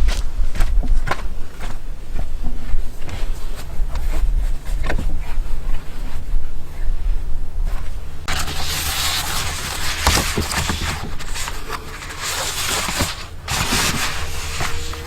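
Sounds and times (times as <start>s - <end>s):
low hum: 0.0s - 15.0s
rustling and scraping: 0.0s - 15.0s.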